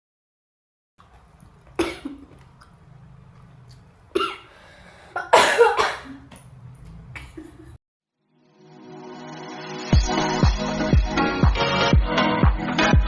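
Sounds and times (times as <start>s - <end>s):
person coughing: 1.8s - 2.3s, 4.2s - 6.3s
faint low hum: 6.0s - 7.8s.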